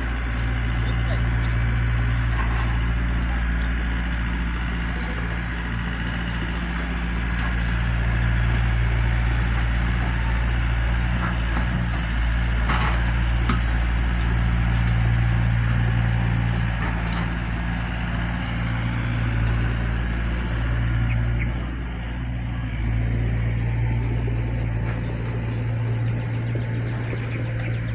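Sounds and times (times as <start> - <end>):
excavator diesel engine running: 0.0 - 27.9.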